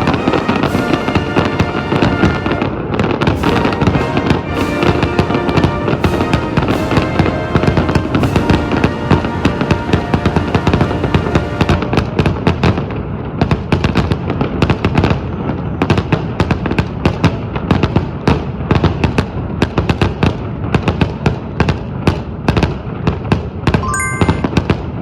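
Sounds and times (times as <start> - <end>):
fireworks bangs: 0.0 - 15.2.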